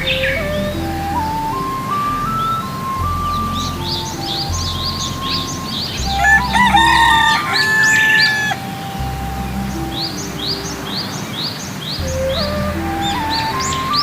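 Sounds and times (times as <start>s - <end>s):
rooster crowing: 6.2s - 8.6s.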